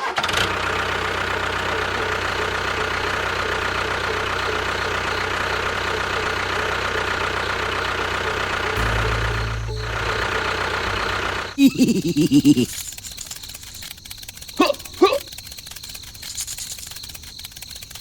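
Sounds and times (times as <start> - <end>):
small engine running: 0.0 - 18.0
low hum: 8.8 - 13.5.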